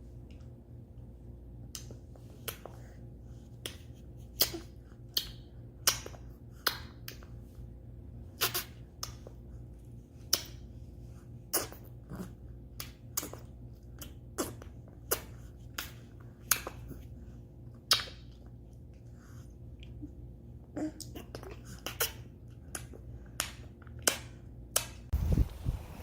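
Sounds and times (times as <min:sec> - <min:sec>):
baby popping clicks with mouth: 0:17.9 - 0:18.4.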